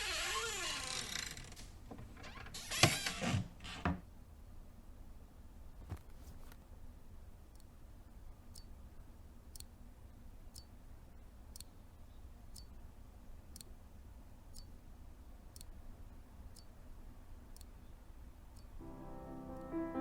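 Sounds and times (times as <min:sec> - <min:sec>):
clock ticking: 0:11.5 - 0:11.7, 0:14.5 - 0:14.7, 0:15.6 - 0:15.8, 0:16.5 - 0:16.7, 0:18.6 - 0:18.8.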